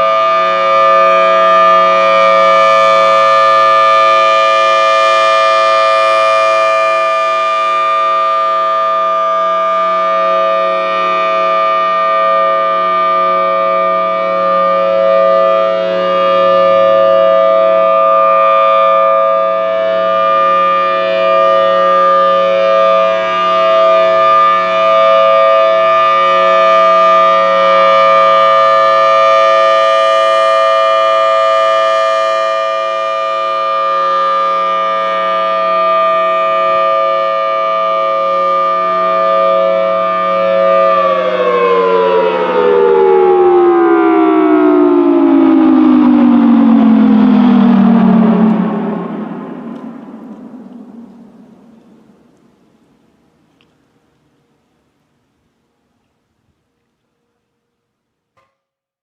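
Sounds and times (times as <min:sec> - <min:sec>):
warning siren two-note chord: 0:00.0 - 0:52.4.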